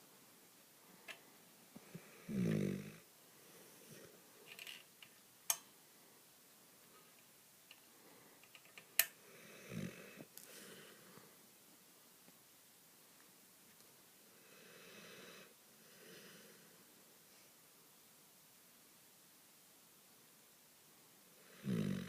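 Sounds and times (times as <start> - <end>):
dog snoring: 1.9 - 3.0, 9.3 - 10.3, 21.4 - 22.0.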